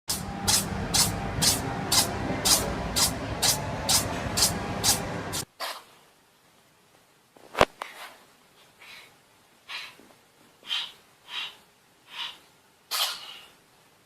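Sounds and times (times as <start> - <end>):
cat sneezing: 12.9 - 13.5.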